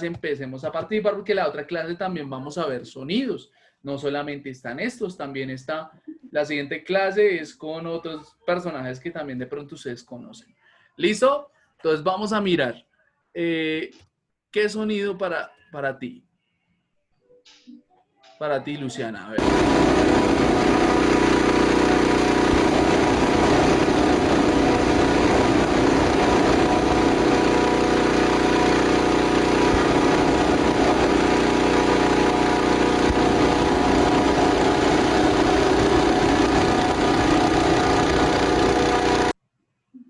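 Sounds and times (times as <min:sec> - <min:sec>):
vehicle engine drone: 0:19.4 - 0:39.3.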